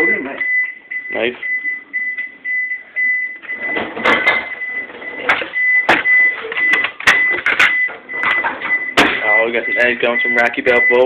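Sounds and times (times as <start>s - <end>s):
kitchen items clattering: 3.6s - 9.2s.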